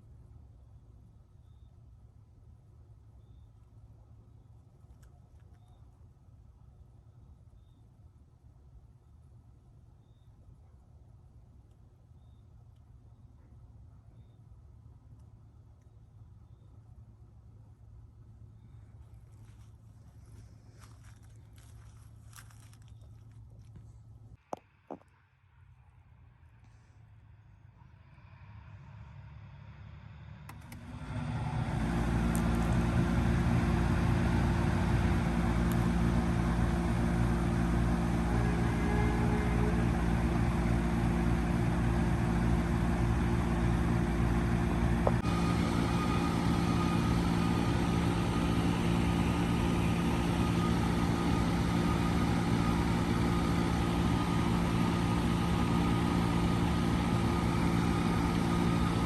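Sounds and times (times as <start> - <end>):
faint steady whine: 11.4 - 59.0
heat pump running hum: 29.2 - 59.0.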